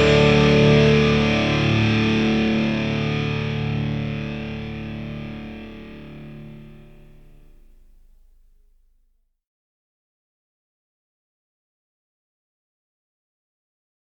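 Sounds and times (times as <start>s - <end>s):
distorted electric guitar chord: 0.0s - 8.7s.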